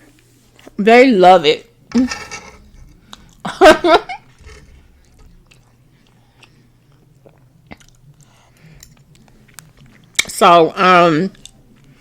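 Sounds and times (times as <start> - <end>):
low steady hum: 0.0 - 12.0
chewing food: 4.3 - 10.4, 11.3 - 12.0.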